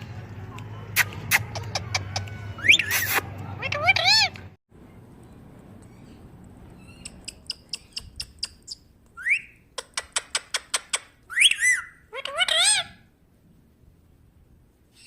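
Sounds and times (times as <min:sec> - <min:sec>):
parrot chirping and squawking: 0:01.0 - 0:04.5, 0:06.8 - 0:13.1.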